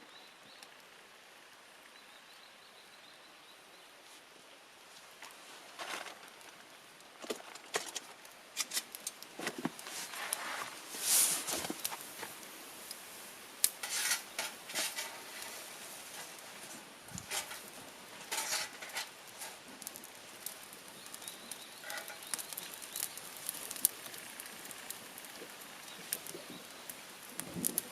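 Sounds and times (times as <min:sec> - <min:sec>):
campfire crackling and popping: 0:05.0 - 0:27.9
fire hissing flare: 0:08.2 - 0:27.9.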